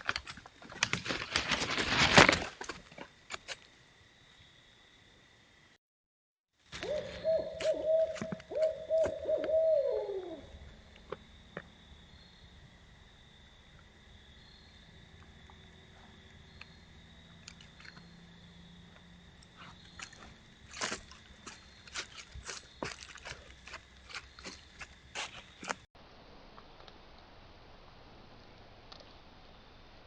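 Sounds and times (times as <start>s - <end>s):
owl hooting: 6.8s - 10.6s.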